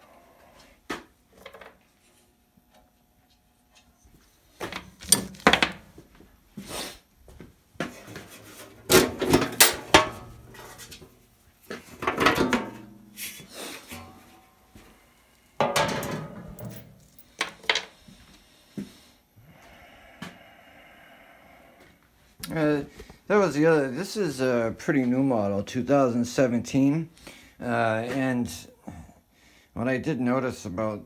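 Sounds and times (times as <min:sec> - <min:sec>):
bandsaw parts clunking and scraping: 0:08.0 - 0:11.0.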